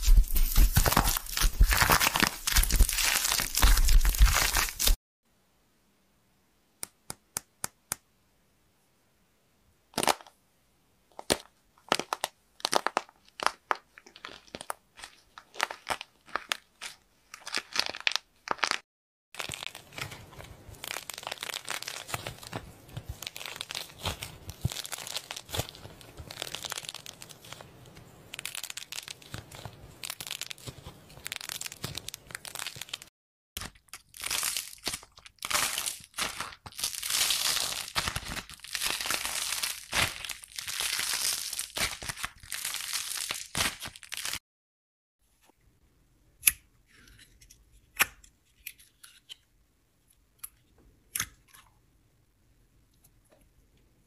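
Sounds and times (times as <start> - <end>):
slime crackling and popping: 0.0 - 5.0, 19.4 - 44.4.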